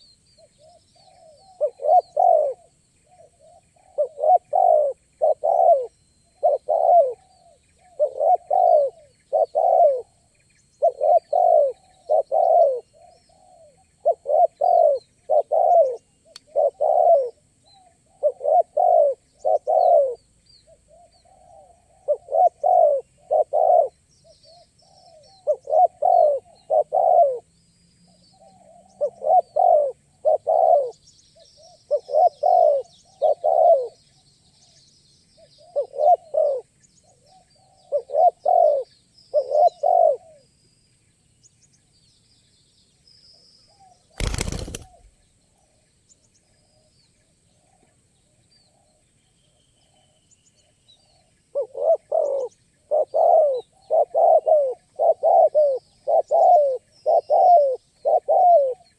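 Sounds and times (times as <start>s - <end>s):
small birds chirping: 0.0s - 58.9s
dove cooing: 0.6s - 10.2s, 10.8s - 17.4s, 18.1s - 24.0s, 24.8s - 27.4s, 28.4s - 31.0s, 31.6s - 34.0s, 35.6s - 40.4s, 44.2s - 45.1s, 51.5s - 58.9s.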